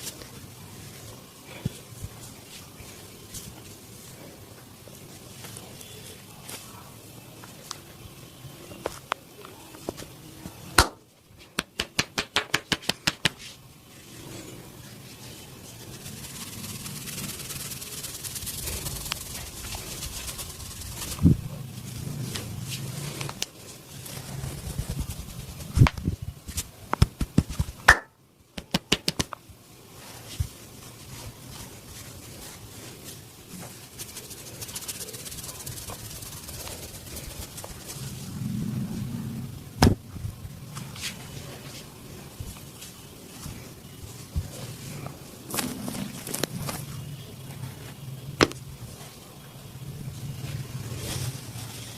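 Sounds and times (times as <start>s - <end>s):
hands rubbing and kneading: 9.8s - 39.2s, 40.4s - 51.9s.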